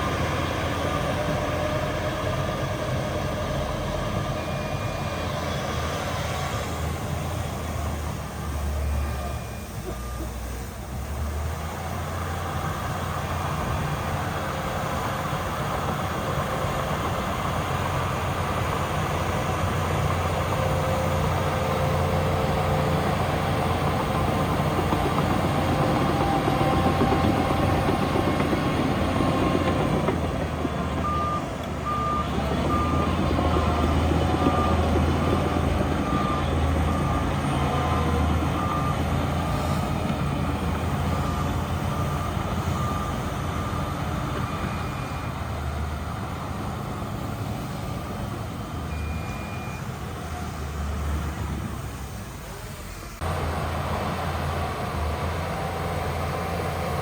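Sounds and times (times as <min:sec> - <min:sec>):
diesel earthmoving machinery: 0:00.0 - 0:57.0
reversing alarm beeping: 0:00.7 - 0:06.6, 0:07.5 - 0:11.3, 0:31.0 - 0:45.8, 0:48.9 - 0:50.9.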